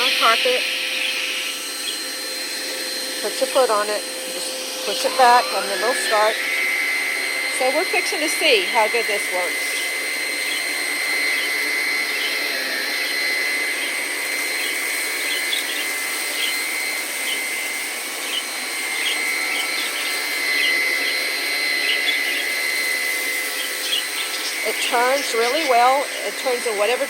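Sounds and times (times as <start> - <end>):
vacuum cleaner motor whine: 0.0 - 27.0
vacuum sucking up seed: 0.0 - 27.0.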